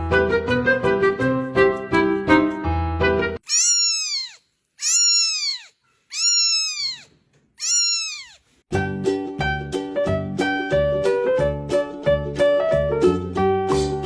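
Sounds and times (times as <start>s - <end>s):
keyboard music: 0.0s - 3.4s, 8.7s - 14.0s
cat meowing: 3.4s - 8.5s.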